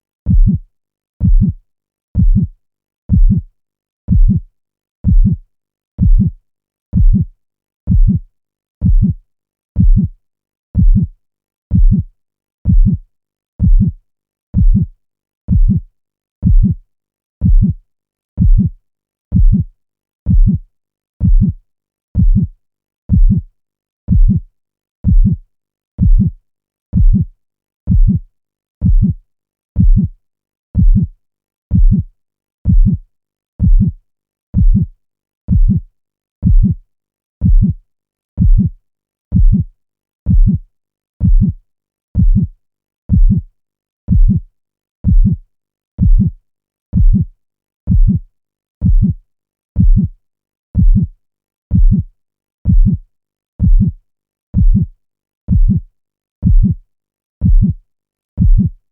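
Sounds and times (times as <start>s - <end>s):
heartbeat thumps: 0.3s - 0.6s, 1.2s - 1.6s, 2.2s - 2.5s, 3.1s - 3.4s, 4.1s - 4.4s, 5.0s - 5.4s, 6.0s - 6.3s, 7.0s - 7.2s, 7.9s - 8.2s, 8.8s - 9.2s, 9.8s - 10.1s, 10.8s - 11.1s, 11.7s - 12.0s, 12.7s - 13.0s, 13.6s - 14.0s, 14.6s - 14.9s, 15.5s - 15.8s, 16.4s - 16.8s, 17.4s - 17.8s, 18.4s - 18.7s, 19.3s - 19.6s, 20.3s - 20.6s, 21.2s - 21.6s, 22.2s - 22.5s, 23.1s - 23.4s, 24.1s - 24.4s, 25.0s - 25.4s, 26.0s - 26.3s, 27.0s - 27.2s, 27.9s - 28.2s, 28.8s - 29.2s, 29.8s - 30.1s, 30.8s - 31.1s, 31.7s - 32.0s, 32.7s - 33.0s, 33.6s - 34.0s, 34.6s - 34.9s, 35.5s - 35.8s, 36.4s - 36.8s, 37.4s - 37.7s, 38.4s - 38.7s, 39.3s - 39.6s, 40.3s - 40.6s, 41.2s - 41.6s, 42.2s - 42.5s, 43.1s - 43.4s, 44.1s - 44.4s, 45.0s - 45.4s, 46.0s - 46.3s, 47.0s - 47.2s, 47.9s - 48.2s, 48.8s - 49.2s, 49.8s - 50.1s, 50.8s - 51.1s, 51.7s - 52.0s, 52.7s - 53.0s, 53.6s - 54.0s, 54.6s - 54.8s, 55.5s - 55.8s, 56.4s - 56.8s, 57.4s - 57.7s, 58.4s - 58.7s.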